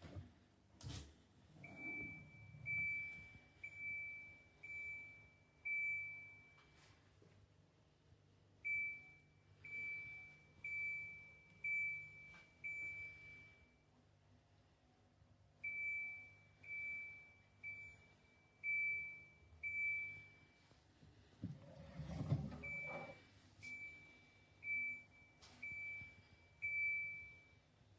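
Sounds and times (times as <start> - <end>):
dishwasher electronic beeps: 1.6 - 6.6, 8.6 - 13.6, 15.6 - 20.5, 21.4 - 27.5.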